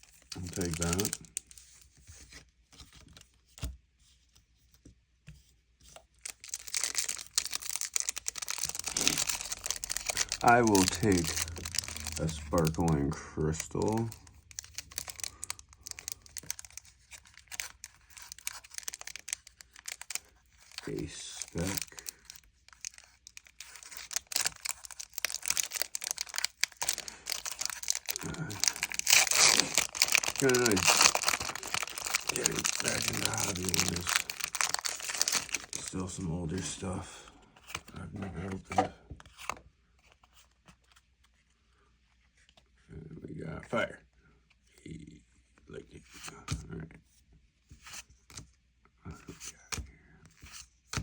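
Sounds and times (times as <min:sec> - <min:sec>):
crinkly wrapper rustling: 0:00.0 - 0:03.4, 0:06.0 - 0:36.8.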